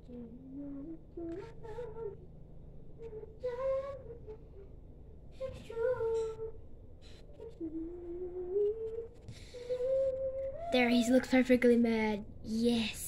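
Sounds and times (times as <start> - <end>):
girl humming a tune: 0.0 - 2.3, 3.0 - 6.6, 7.3 - 11.6.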